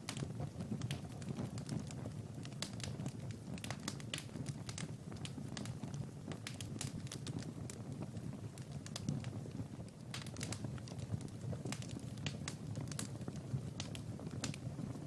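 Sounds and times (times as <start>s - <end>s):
low rumble of flame: 0.0s - 15.0s
wood fire crackling: 0.0s - 15.0s.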